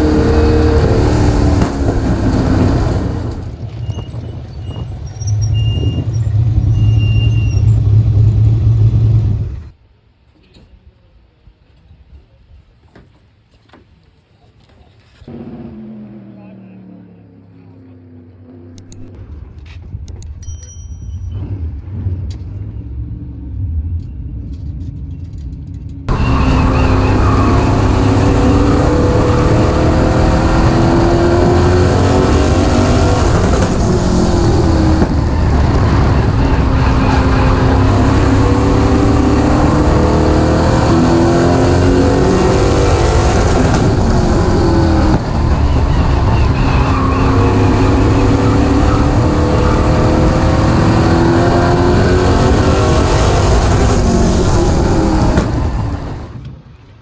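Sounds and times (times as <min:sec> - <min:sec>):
race car engine revving: 0:00.0 - 0:09.7, 0:26.1 - 0:56.4.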